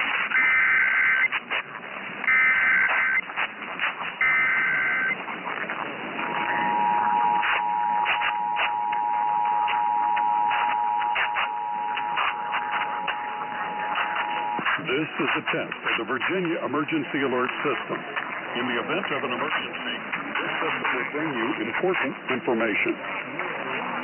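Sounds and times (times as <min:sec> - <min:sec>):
screechy data tones: 0:00.0 - 0:01.4, 0:02.2 - 0:03.5, 0:04.2 - 0:05.2, 0:06.2 - 0:15.0
static crackles: 0:00.0 - 0:24.0
two-tone attention signal: 0:04.2 - 0:05.2, 0:06.2 - 0:14.9.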